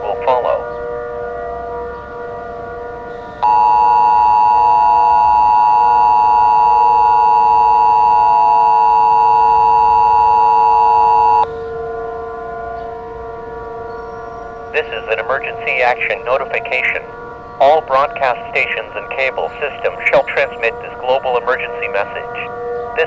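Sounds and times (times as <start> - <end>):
two-tone alarm: 0.0 - 12.4, 14.1 - 23.0
steady drone of several tones: 3.1 - 11.7.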